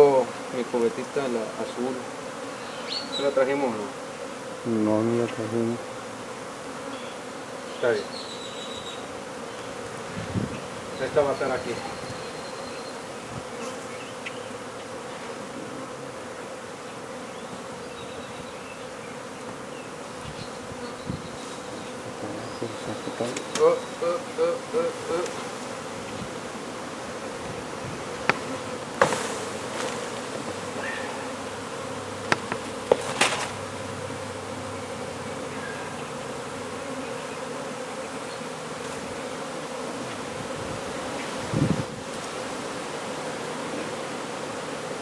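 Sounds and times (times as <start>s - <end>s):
honey bees buzzing: 0.0s - 45.0s
sharp knocks or clicks: 32.2s - 33.5s.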